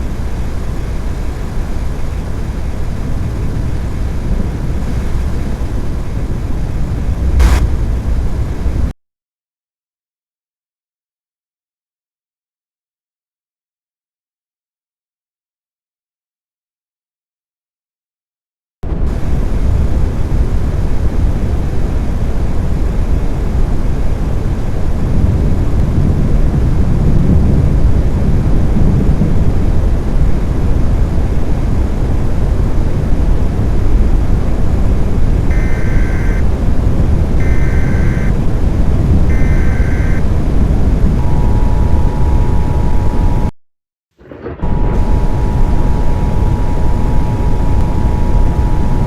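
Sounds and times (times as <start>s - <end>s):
loud rumbling noise: 0.0s - 8.9s, 18.8s - 43.5s, 44.2s - 49.0s
warbling data tones: 7.4s - 7.9s, 35.5s - 36.4s, 37.4s - 38.3s, 39.3s - 40.2s, 41.1s - 43.5s, 44.6s - 49.0s
two-note attention tone: 35.5s - 36.4s, 37.4s - 38.3s, 39.3s - 40.2s, 41.2s - 43.5s, 44.6s - 49.0s.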